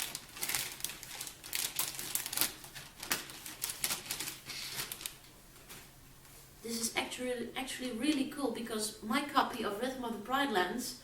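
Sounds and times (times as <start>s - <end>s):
packaging rustling: 0.0s - 5.9s.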